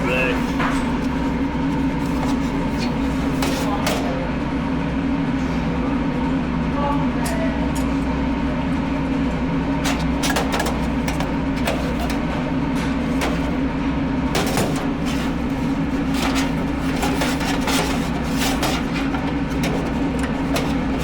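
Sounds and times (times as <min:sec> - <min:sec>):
hand tools clicking and knocking: 0:14.4 - 0:21.0.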